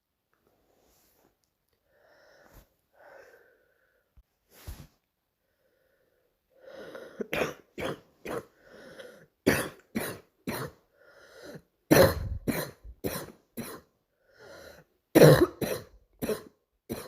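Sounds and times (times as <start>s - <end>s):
girl coughing: 7.2s - 8.5s, 9.4s - 10.8s, 11.9s - 13.9s, 15.2s - 17.0s.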